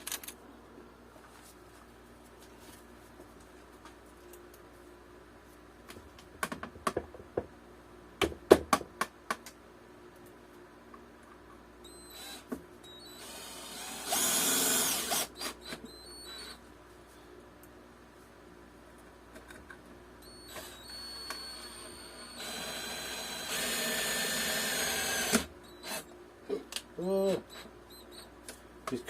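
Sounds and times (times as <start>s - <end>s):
power drill driving a screw: 12.1s - 16.6s, 20.4s - 26.1s.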